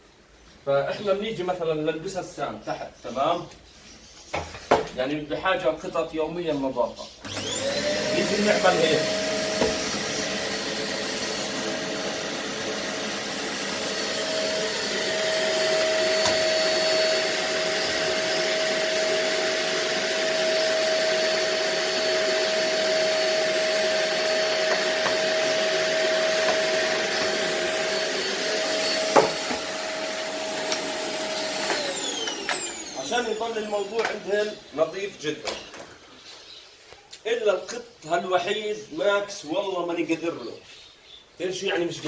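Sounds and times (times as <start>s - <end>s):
vacuum cleaner running: 7.2s - 35.0s.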